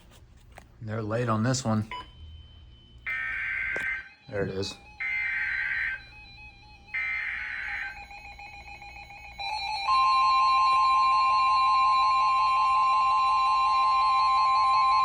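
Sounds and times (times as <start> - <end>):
steady warning alarm tone: 0.8 - 15.0
warbling alarm: 0.8 - 15.0
buzzy data bursts: 1.6 - 10.5.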